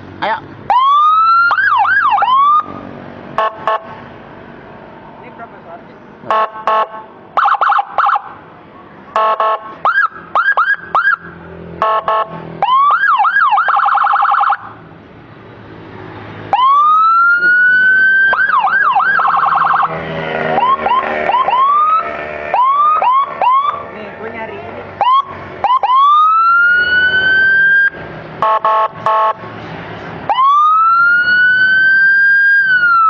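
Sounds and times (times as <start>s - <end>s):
electronic siren cycling tones: 0.7s - 2.8s, 6.3s - 8.3s, 9.2s - 14.8s, 16.5s - 23.9s, 25.0s - 29.4s, 30.3s - 33.0s.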